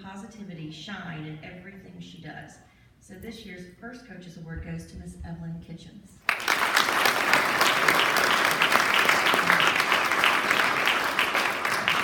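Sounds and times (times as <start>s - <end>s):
audience applauding: 6.3s - 12.0s.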